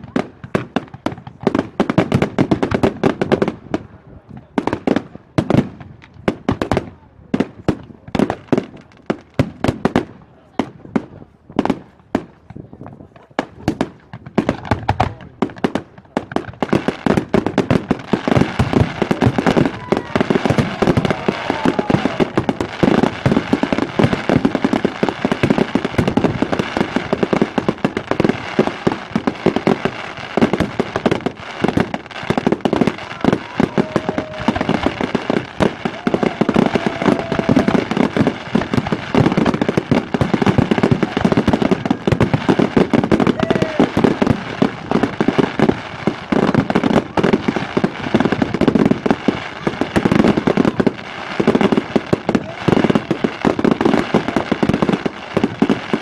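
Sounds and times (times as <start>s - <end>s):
fireworks bangs and crackles: 0.0s - 56.0s
fireworks whistling: 17.0s - 56.0s.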